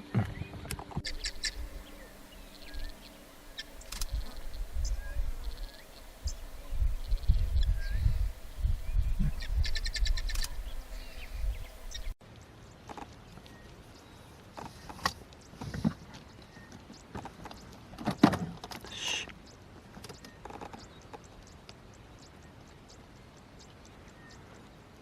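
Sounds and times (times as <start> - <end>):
low uneven rumble: 0.0 - 14.5
small birds chirping: 0.0 - 17.9, 18.8 - 25.0.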